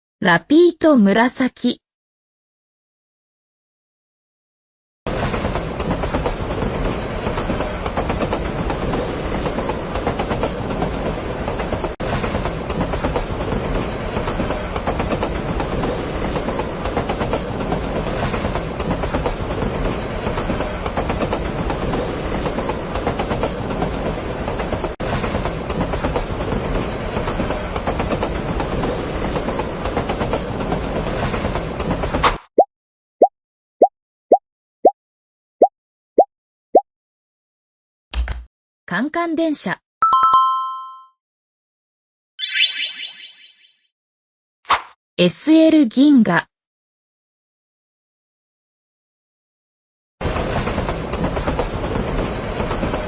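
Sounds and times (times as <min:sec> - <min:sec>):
train rumbling on rails: 0:05.1 - 0:32.3, 0:50.2 - 0:53.0.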